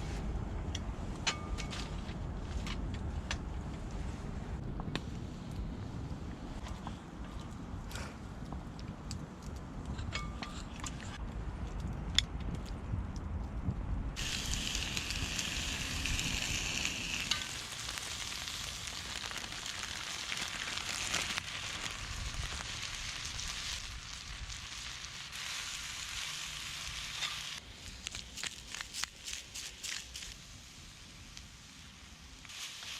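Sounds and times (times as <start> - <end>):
food sizzling on a pan: 14.2 - 30.9, 32.5 - 32.9.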